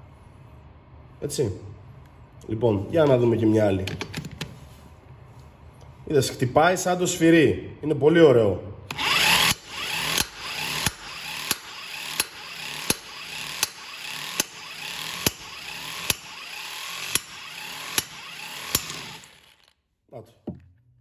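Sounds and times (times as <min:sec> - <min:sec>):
impact wrench motor running: 0:08.9 - 0:19.8
impact wrench hammer knocking: 0:09.5 - 0:19.4.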